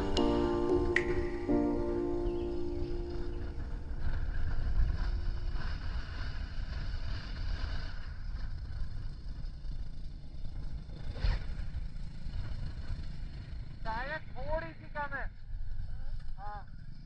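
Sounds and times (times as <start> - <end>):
background music: 0.0 - 4.8.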